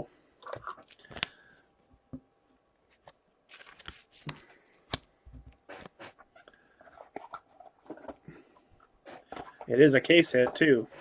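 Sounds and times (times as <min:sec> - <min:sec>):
trading cards clicking and rustling: 0:03.0 - 0:08.3, 0:09.1 - 0:11.0.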